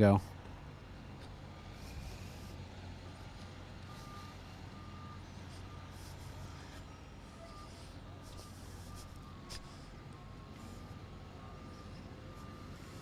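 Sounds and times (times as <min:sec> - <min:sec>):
diesel engines humming: 0:00.0 - 0:13.0
vehicle reversing alarm beeping: 0:00.0 - 0:13.0.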